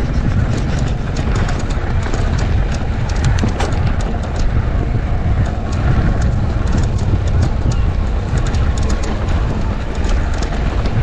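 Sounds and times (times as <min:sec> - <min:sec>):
electric bike motor rumble: 0:00.0 - 0:11.0
tyres clicking and rattling over rocks: 0:00.0 - 0:11.0.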